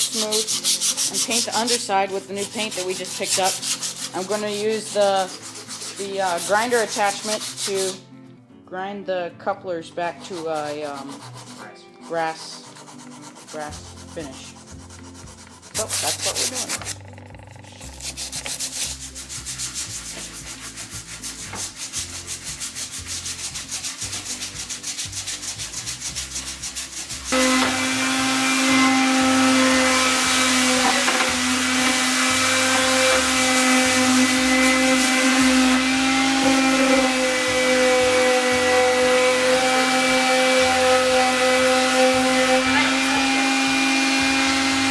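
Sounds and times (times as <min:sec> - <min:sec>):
hand sanding wood: 0:00.0 - 0:08.0, 0:10.1 - 0:17.0, 0:17.8 - 0:44.9
electric grinder running: 0:15.8 - 0:18.7, 0:27.3 - 0:44.9.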